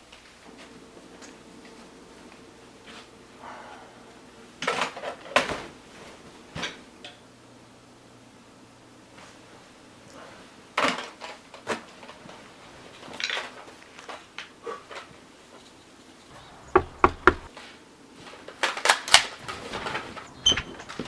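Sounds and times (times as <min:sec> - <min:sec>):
knocks and clattering handling: 0:16.3 - 0:17.5
sharp knocks: 0:16.3 - 0:17.5.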